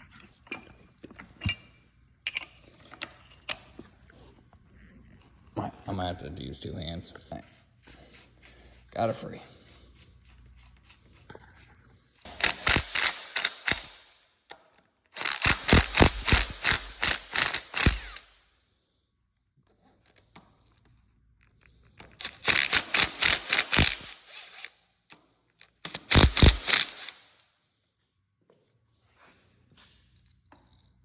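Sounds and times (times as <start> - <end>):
socket ratchet wrench clicking: 12.3 - 14.0, 15.2 - 18.3, 22.0 - 24.7, 25.6 - 27.2.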